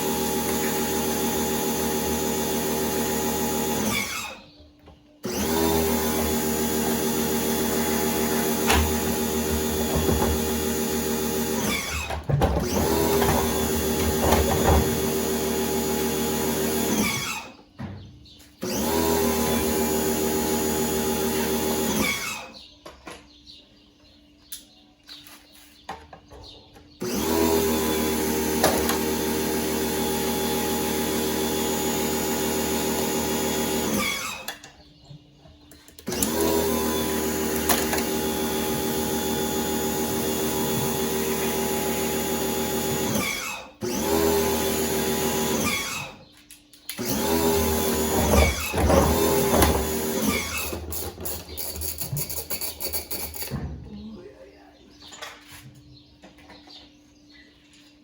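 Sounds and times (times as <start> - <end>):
electric power tool motor: 0.0 - 4.6, 5.2 - 17.6, 18.6 - 22.6, 27.0 - 34.7, 36.0 - 46.3, 46.9 - 53.6.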